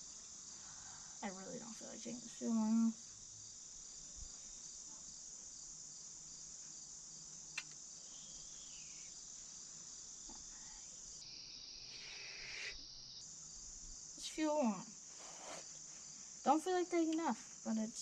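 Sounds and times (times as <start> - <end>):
crickets chirring: 0.0 - 18.0
sharp click: 7.6 - 7.8.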